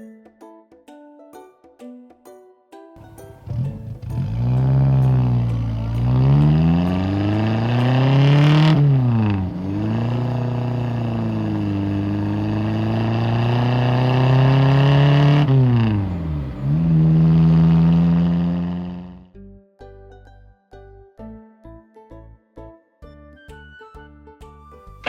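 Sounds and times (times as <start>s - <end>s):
vehicle engine revving: 3.0s - 19.3s.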